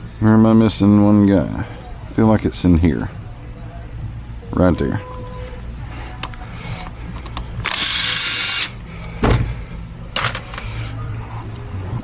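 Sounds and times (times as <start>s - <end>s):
power driver whirring: 7.6s - 8.8s
heavy metal clunk: 9.2s - 9.6s.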